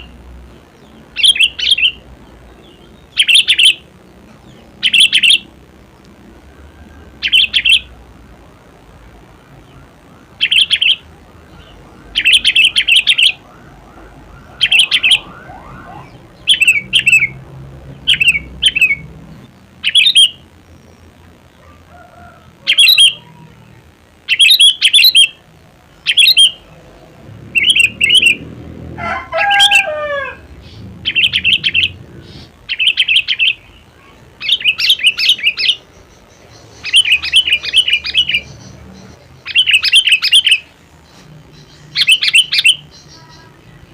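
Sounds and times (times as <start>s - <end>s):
bulbul singing: 0.0s - 43.9s.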